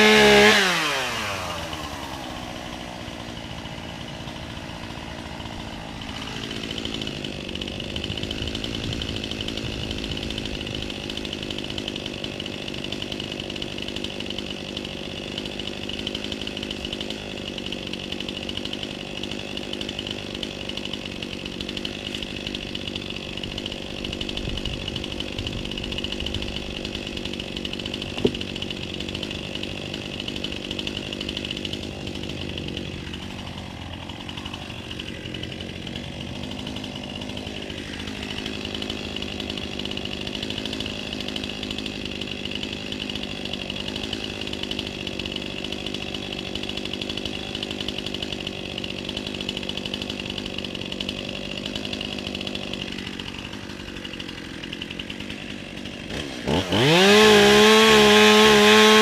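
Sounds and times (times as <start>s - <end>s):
chainsaw engine running: 0.0s - 59.0s.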